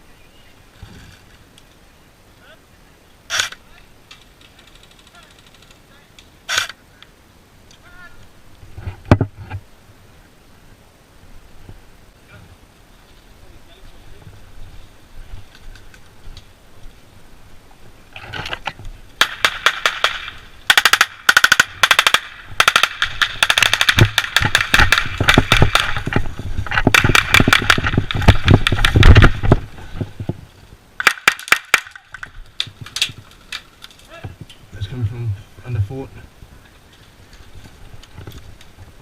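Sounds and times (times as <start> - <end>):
airsoft guns firing bursts: 19.2 - 26.1, 26.9 - 29.4.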